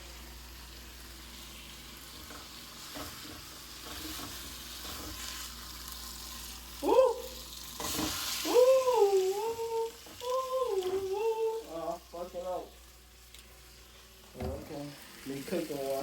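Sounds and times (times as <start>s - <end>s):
food sizzling in a pan: 0.0s - 16.0s
person humming a tune: 6.8s - 7.3s, 8.4s - 12.1s.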